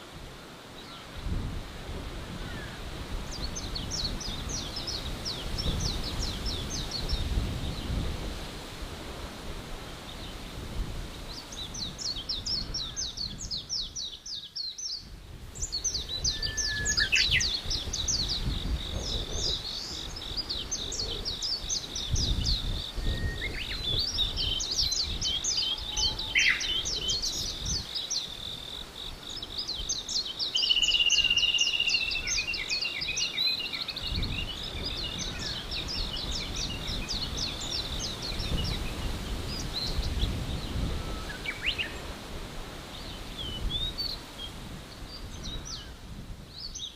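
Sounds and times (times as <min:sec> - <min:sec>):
birds chirping: 0:02.5 - 0:08.0, 0:11.2 - 0:42.2.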